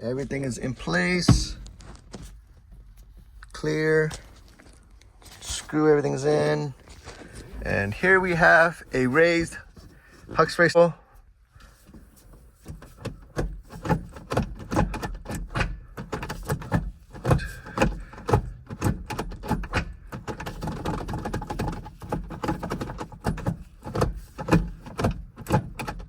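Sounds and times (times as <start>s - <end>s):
gear lever clicking and clunking: 0.0s - 4.2s, 11.9s - 26.0s.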